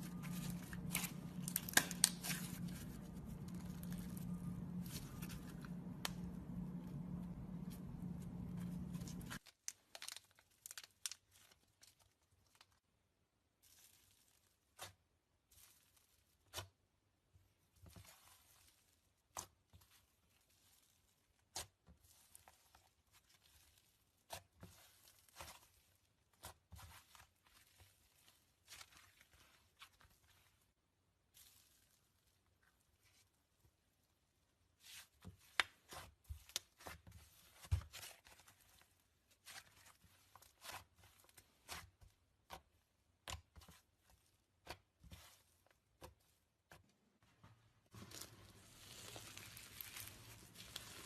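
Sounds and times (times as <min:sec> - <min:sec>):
steady low hum: 0:00.0 - 0:09.4
slime popping and crackling: 0:00.1 - 0:06.4.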